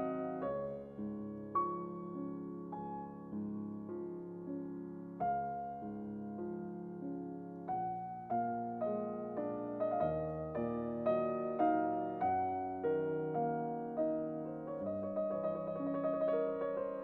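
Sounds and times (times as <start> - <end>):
slow piano notes: 0.0 - 17.0.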